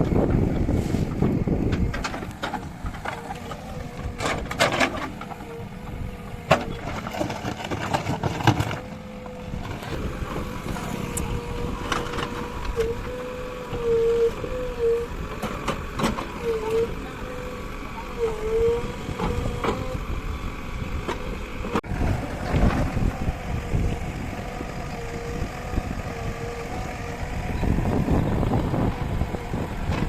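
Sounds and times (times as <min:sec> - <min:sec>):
backhoe loader whining: 0:00.0 - 0:30.0
knocks and clanks: 0:01.7 - 0:08.9.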